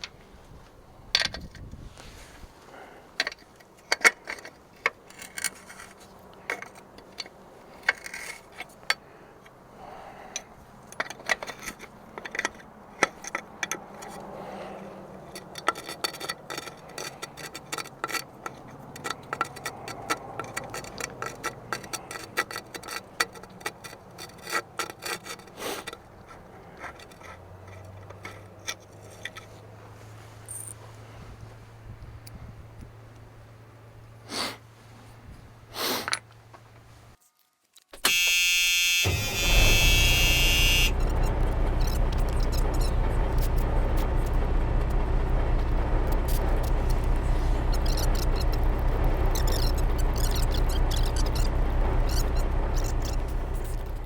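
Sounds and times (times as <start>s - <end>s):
hand tools clicking on metal parts: 10.3s - 29.6s, 41.6s - 54.0s
low steady hum: 39.0s - 54.0s.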